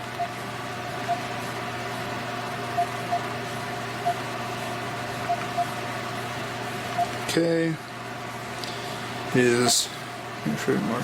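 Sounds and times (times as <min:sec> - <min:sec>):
steady electrical hum: 0:00.0 - 0:11.0
electronic keypad beeps: 0:01.0 - 0:01.3, 0:02.7 - 0:03.3, 0:04.0 - 0:04.2, 0:05.2 - 0:05.8, 0:06.9 - 0:07.2.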